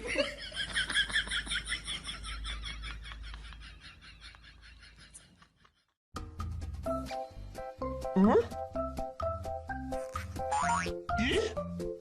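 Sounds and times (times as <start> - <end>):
music: 6.2 - 12.0.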